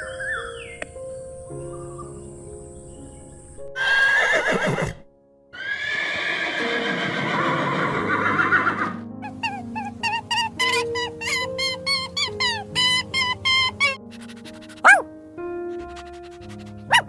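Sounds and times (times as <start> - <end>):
background music: 0.0 - 17.0
horse whinnying: 3.8 - 9.5, 10.3 - 14.0.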